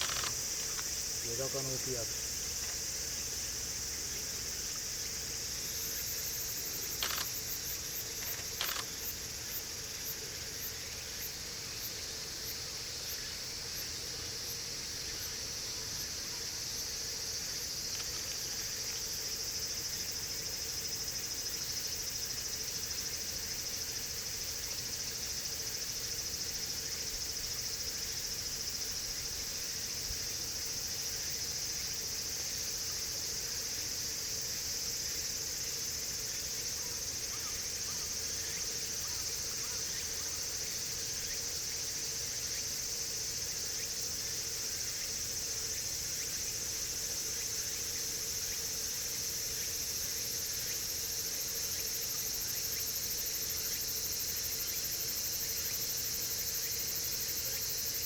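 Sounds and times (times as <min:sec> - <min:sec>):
sharp clicks: 0:00.0 - 0:00.9, 0:07.0 - 0:07.4, 0:08.2 - 0:08.9
insects calling: 0:00.0 - 0:58.0.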